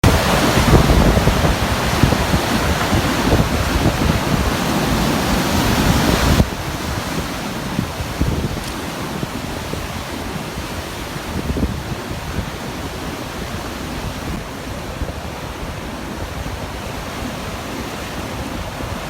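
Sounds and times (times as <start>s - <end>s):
sea waves breaking on rocks: 0.0s - 19.0s.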